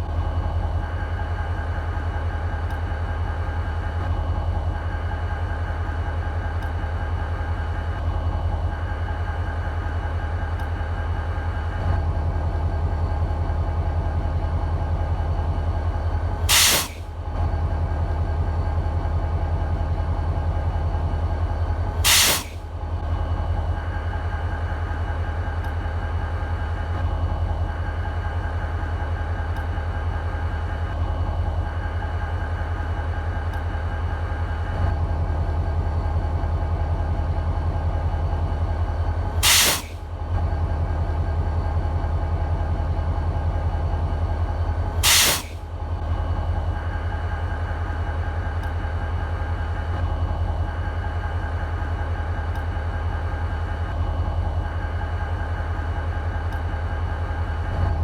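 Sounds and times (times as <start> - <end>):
diesel locomotive engine idling: 0.0 - 58.0
loud hiss bursts: 16.5 - 17.0, 22.0 - 22.6, 39.4 - 40.0, 45.0 - 45.6.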